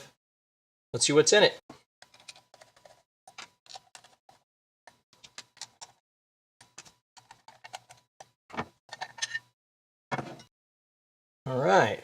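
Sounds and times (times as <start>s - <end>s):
metal enclosure clicks and scrapes: 8.9s - 9.5s.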